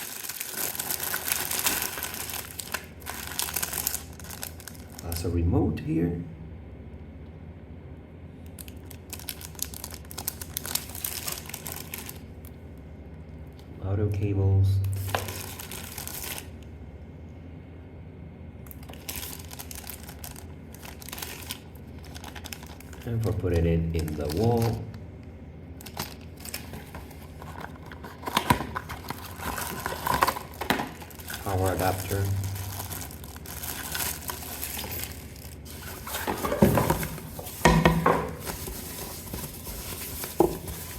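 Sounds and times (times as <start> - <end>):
packaging crinkling: 0.0 - 5.3, 8.5 - 12.5, 14.9 - 16.6, 18.7 - 23.1, 25.8 - 40.9.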